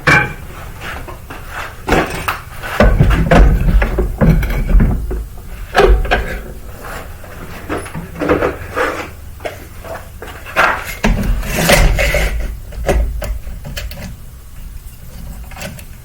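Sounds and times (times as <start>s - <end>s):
objects knocking and clicking: 1.9s - 6.6s
heavy low rumbling: 2.8s - 9.4s.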